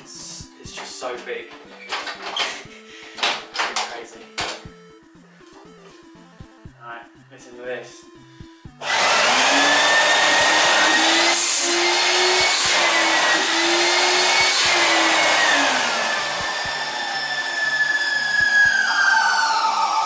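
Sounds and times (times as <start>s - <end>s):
chiptune music: 0.0s - 20.0s
industrial vacuum whining: 8.8s - 20.0s.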